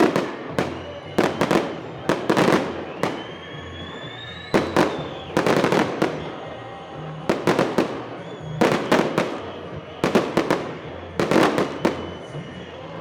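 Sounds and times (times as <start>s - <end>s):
fireworks bursting with sharp bangs: 0.0s - 13.0s
faint whistle rising in pitch: 0.2s - 13.0s.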